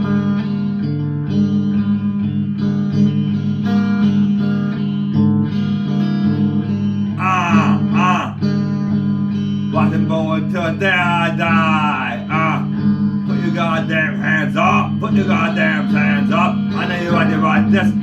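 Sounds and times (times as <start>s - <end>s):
guitar chords: 0.0s - 18.0s
short burst of voice: 7.2s - 8.4s, 9.8s - 12.7s.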